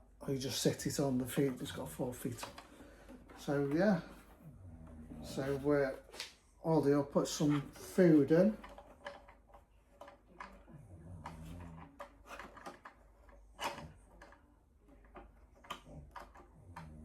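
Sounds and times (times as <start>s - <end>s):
plastic clicks and knocks from handling: 1.2s - 4.4s, 7.2s - 17.0s.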